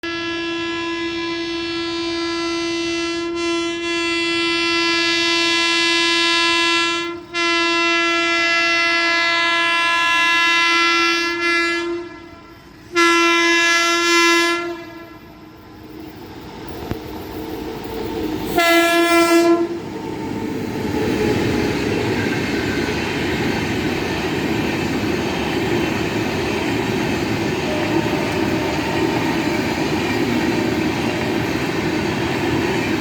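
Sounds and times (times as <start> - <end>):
locomotive horn blasts: 0.0 - 15.4, 18.6 - 19.8, 27.6 - 29.8
train rumble: 10.9 - 33.0.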